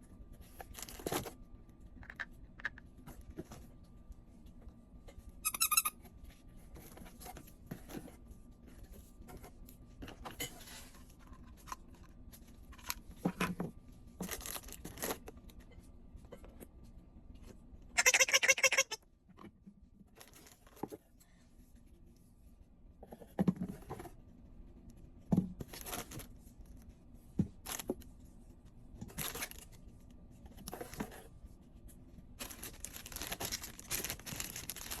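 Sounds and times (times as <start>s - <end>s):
packaging tearing and rustling: 14.2s - 15.2s, 32.4s - 35.0s.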